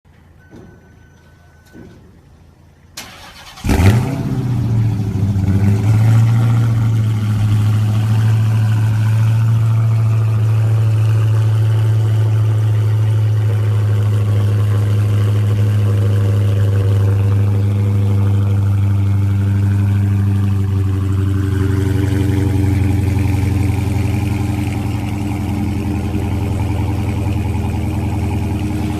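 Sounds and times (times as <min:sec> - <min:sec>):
car engine starting and idling: 0:00.1 - 0:28.9
engine cranking: 0:03.0 - 0:04.1.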